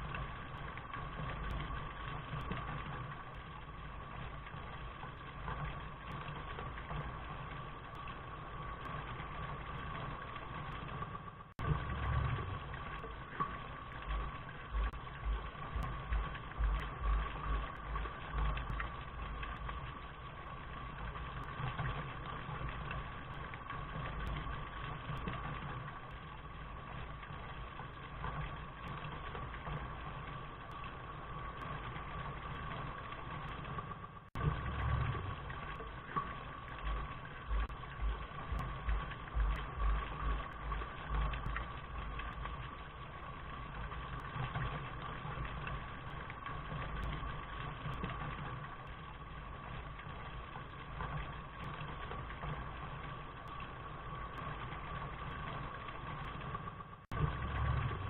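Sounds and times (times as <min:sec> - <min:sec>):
low rumble: 0:00.0 - 0:33.8, 0:34.4 - 0:48.5, 0:55.8 - 0:58.0
steady rain: 0:00.0 - 0:58.0
low pulsing thumps: 0:11.6 - 0:20.0, 0:34.4 - 0:42.9, 0:57.1 - 0:58.0.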